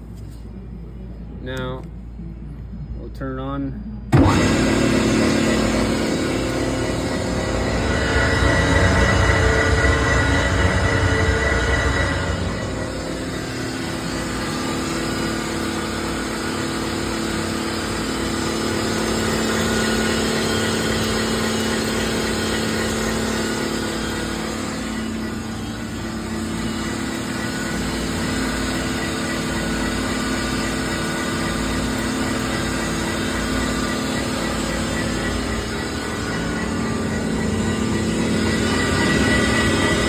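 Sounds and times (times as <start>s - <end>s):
mixer grinder motor humming: 4.1s - 40.0s.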